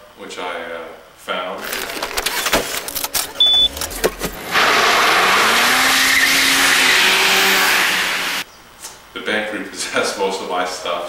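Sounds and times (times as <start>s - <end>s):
short high beep: 3.3s - 4.1s
car engine running: 3.6s - 8.4s.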